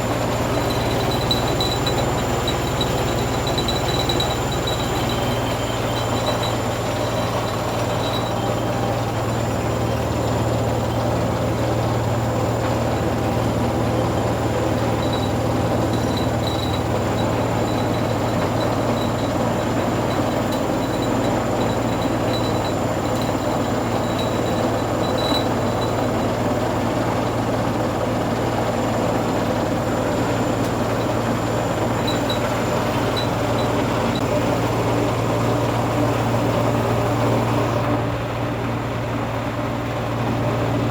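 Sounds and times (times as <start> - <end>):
washing machine spinning: 0.0 - 40.9.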